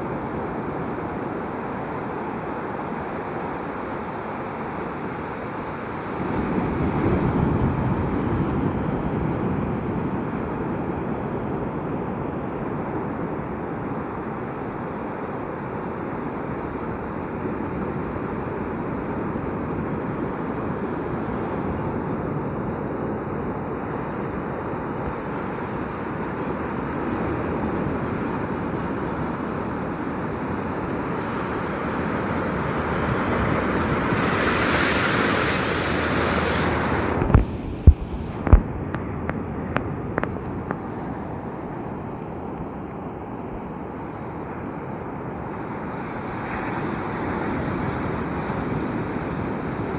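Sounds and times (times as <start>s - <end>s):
sea waves breaking on beach: 0.0s - 49.9s.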